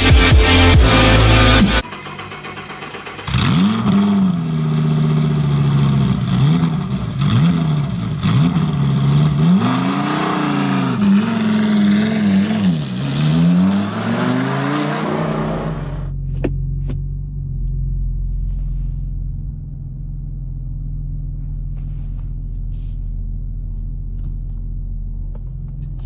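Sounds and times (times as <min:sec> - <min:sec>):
car engine revving: 0:00.0 - 0:26.0.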